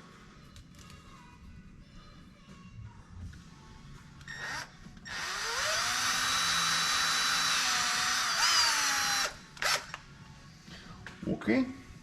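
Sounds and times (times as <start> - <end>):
power drill drilling: 4.3 - 10.0.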